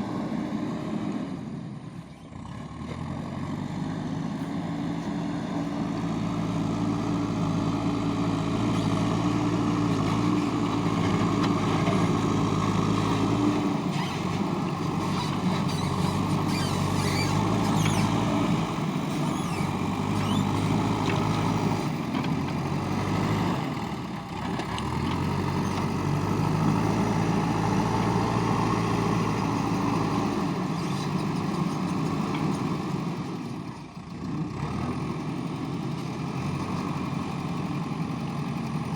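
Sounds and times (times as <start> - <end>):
diesel engine running: 0.1 - 38.9
faint high squeaks: 13.9 - 14.4, 15.0 - 20.8.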